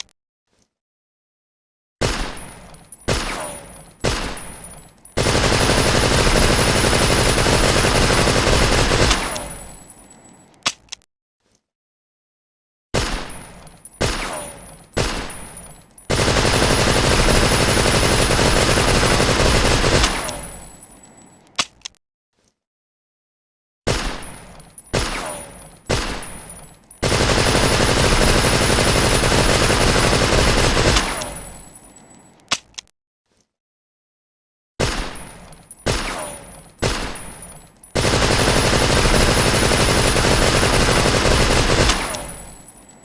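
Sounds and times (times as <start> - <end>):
submachine gun firing: 5.2 - 9.4, 16.1 - 20.6, 27.0 - 31.5, 38.0 - 42.6.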